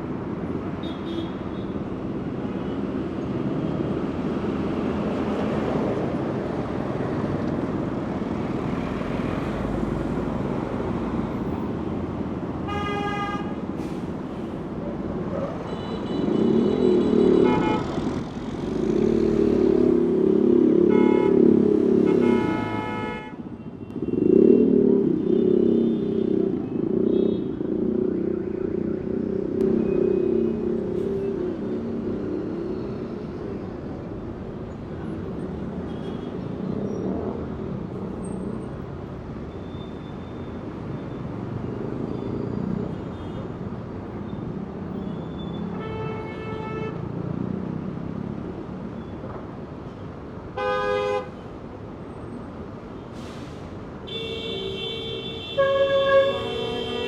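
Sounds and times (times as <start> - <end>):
traffic rumble: 0.0 - 57.0
trucks and buses passing: 0.0 - 57.0
car horns honking: 22.1 - 23.4, 50.6 - 51.3, 54.1 - 57.0.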